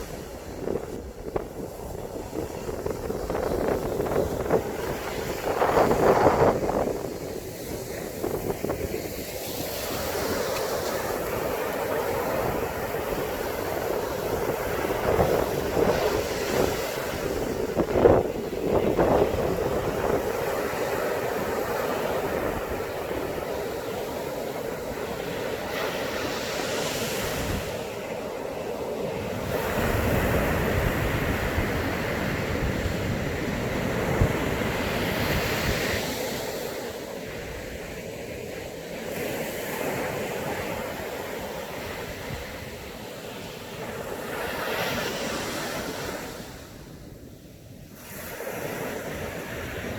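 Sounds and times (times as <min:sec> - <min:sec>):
wind buffeting microphone: 0:00.0 - 0:25.4, 0:29.0 - 0:37.9
surf breaking on beach: 0:00.0 - 0:46.7.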